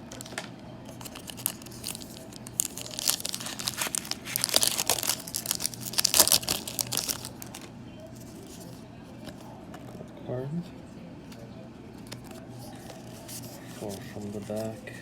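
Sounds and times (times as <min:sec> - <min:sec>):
foil wrapper crinkling and tearing: 0:00.9 - 0:07.7.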